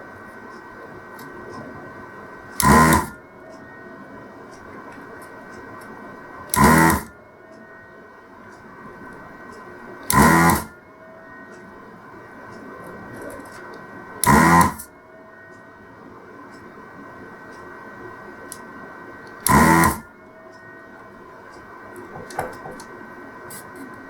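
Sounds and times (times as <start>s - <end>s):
steady quiet hum: 0.0s - 24.0s
desoldering pump buzz: 1.1s - 3.8s, 6.5s - 7.3s, 10.0s - 10.8s, 14.1s - 15.0s, 19.2s - 20.8s.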